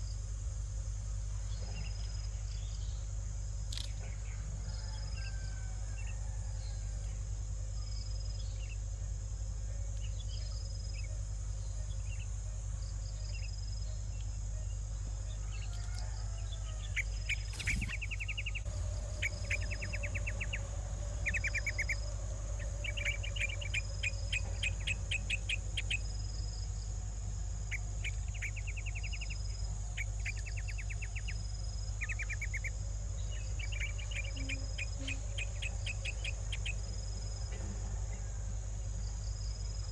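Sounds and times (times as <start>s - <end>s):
crickets chorus: 0.0s - 39.9s
rapid chirping trills: 16.8s - 27.0s, 27.6s - 37.4s.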